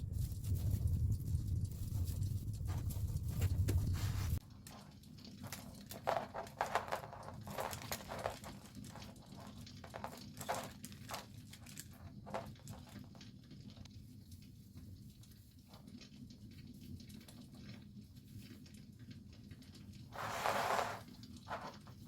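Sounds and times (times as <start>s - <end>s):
rustling: 0.0s - 13.8s, 19.8s - 22.0s.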